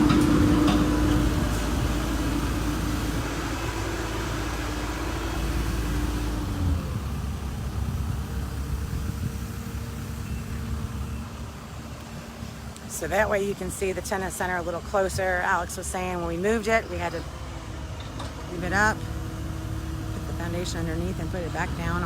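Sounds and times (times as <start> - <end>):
engine running: 0.0 - 22.0.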